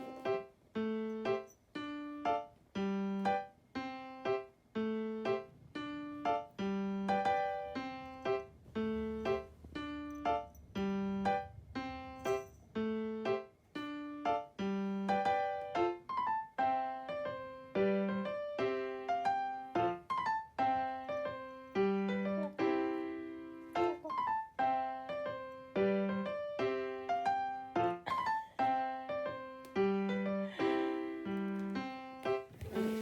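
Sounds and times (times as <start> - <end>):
light piano tune: 0.0 - 33.0.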